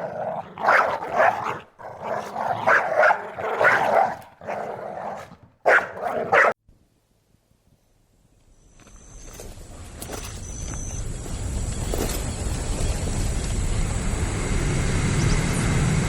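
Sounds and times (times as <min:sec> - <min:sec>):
dog barking: 0:00.0 - 0:06.6.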